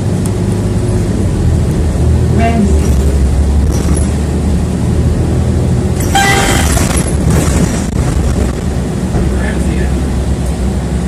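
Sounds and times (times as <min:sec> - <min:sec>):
bus engine rumble: 0:00.0 - 0:11.0
clatter: 0:02.6 - 0:04.3, 0:06.0 - 0:09.4.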